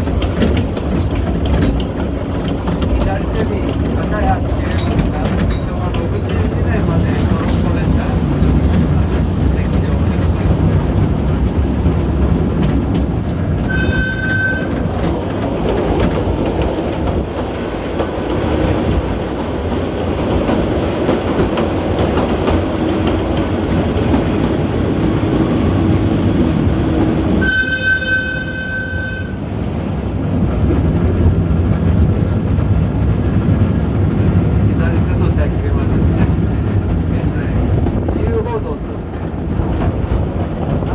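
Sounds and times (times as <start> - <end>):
train wheels rumbling on rail: 0.0 - 40.9
train horn blasts: 13.6 - 14.9, 27.4 - 29.4.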